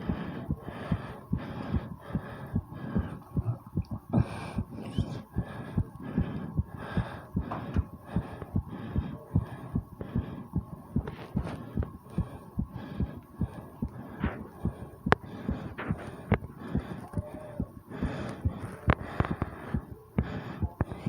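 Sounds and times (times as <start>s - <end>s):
fast heartbeat: 0.0s - 21.0s.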